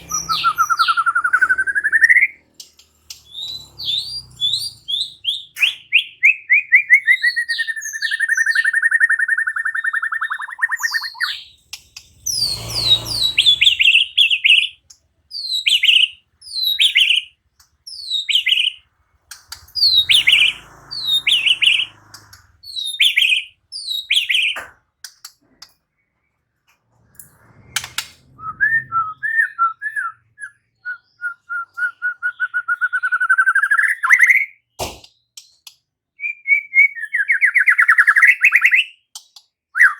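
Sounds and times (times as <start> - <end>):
bird singing trills and whistles: 0.0 - 24.7, 28.2 - 34.7, 35.3 - 39.9
short bursts of noise: 11.8 - 14.3.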